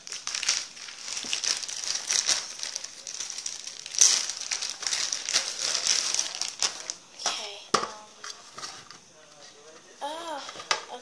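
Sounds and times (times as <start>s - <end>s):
packaging crinkling: 0.0s - 7.0s.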